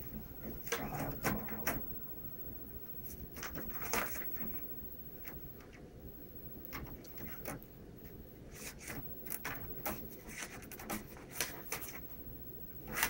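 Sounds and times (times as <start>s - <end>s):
cat scratching at printer: 8.5s - 12.0s.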